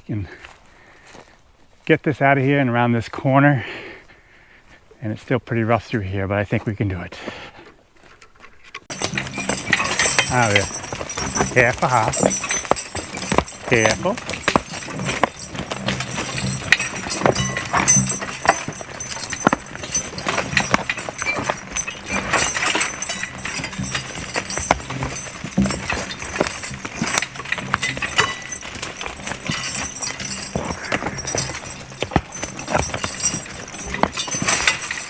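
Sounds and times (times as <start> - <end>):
hooves clopping on rocks: 0.2 - 3.1, 7.2 - 35.0
cart knocking and rattling: 8.9 - 35.0.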